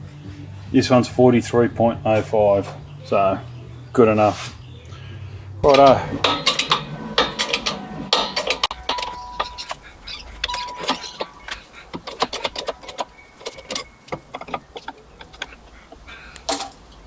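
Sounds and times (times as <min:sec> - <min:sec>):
metal parts and tools clinking: 0:05.6 - 0:17.0.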